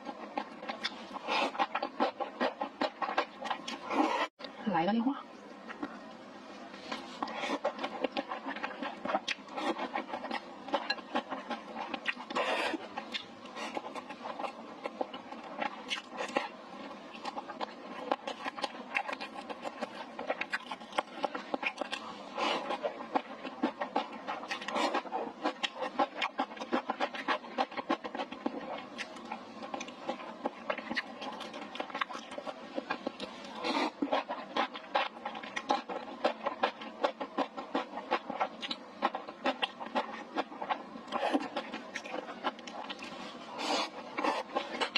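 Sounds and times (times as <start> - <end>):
person chewing: 0.0 - 4.3, 6.8 - 44.9.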